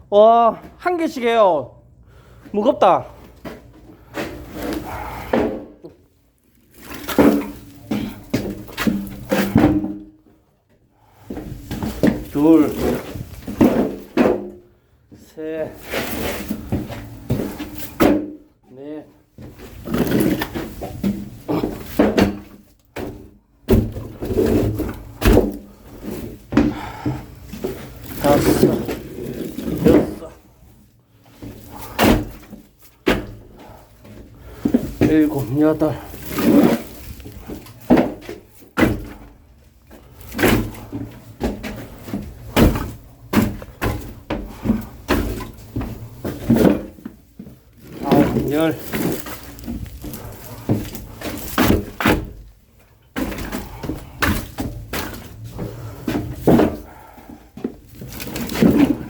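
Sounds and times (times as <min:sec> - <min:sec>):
firewood thumping and knocking: 0:03.4 - 0:06.0, 0:06.8 - 0:10.2, 0:11.3 - 0:14.6, 0:16.5 - 0:18.5, 0:19.4 - 0:30.2, 0:31.4 - 0:52.5, 0:53.2 - 0:59.0
wood scraping and rustling: 0:06.4 - 0:10.1, 0:11.1 - 0:14.6, 0:15.2 - 0:18.4, 0:19.2 - 0:59.0
heavy wooden thuds: 0:06.8 - 0:10.2, 0:19.4 - 0:30.4, 0:31.3 - 0:59.0.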